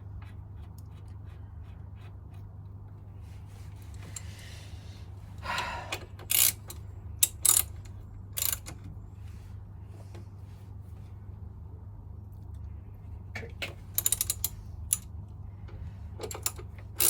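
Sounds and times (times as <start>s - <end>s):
steady low hum: 0.0s - 17.0s
metallic tool clicks and rattles: 6.3s - 8.7s, 14.0s - 15.1s, 16.2s - 17.0s.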